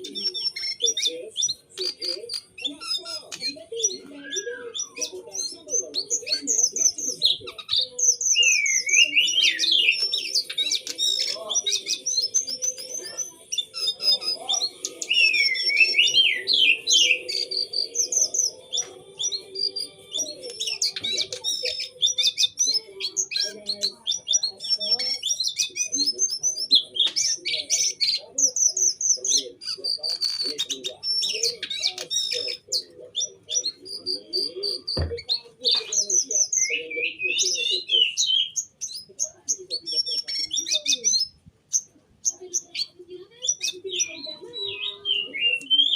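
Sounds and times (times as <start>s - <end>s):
songbird chirping and trilling: 0.0s - 45.9s.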